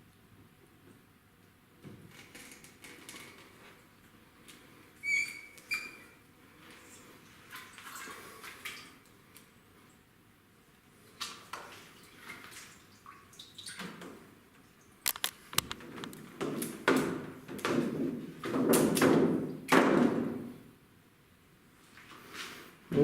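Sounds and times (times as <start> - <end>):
sharp clicks: 15.1 - 15.8.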